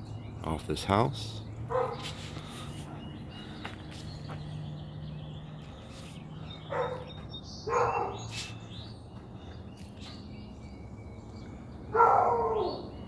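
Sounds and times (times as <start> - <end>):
birds chirping faintly: 0.0 - 13.0
dog barking: 1.7 - 2.1, 6.7 - 7.1, 7.7 - 8.3, 11.9 - 12.9.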